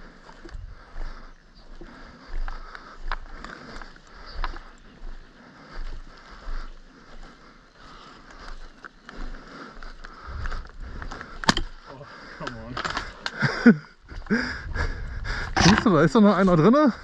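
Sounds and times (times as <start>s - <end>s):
footsteps: 0.0s - 11.8s.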